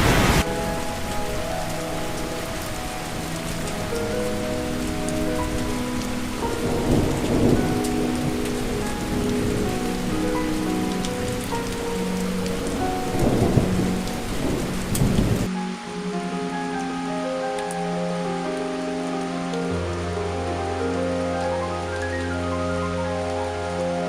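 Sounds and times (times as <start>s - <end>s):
thunder rumbling: 0.0s - 15.6s
heavy rain: 0.0s - 24.0s
soft music with slow held notes: 0.4s - 24.0s.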